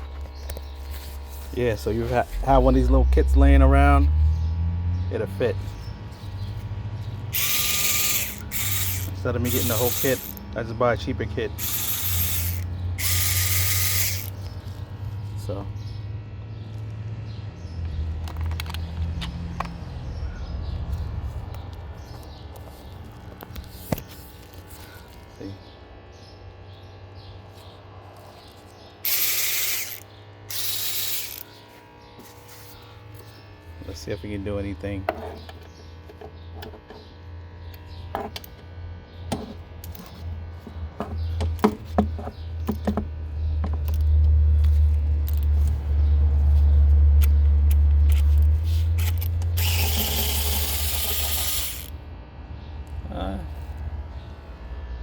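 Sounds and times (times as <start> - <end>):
electric ratchet motor: 0.0 - 15.6, 27.6 - 34.1, 35.4 - 52.0
steady low rumble: 1.2 - 9.5, 14.4 - 23.4.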